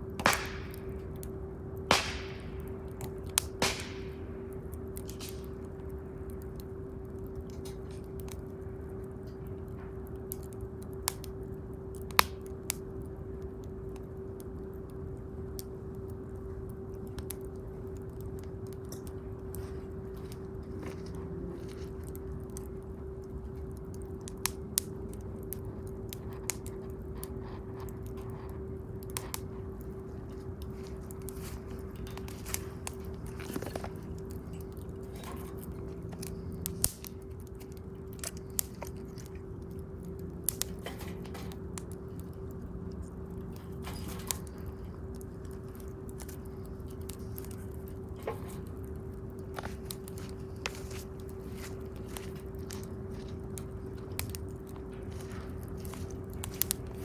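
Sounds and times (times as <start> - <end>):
bonfire crackling: 0.0 - 57.0
faint steady hum: 0.0 - 57.0.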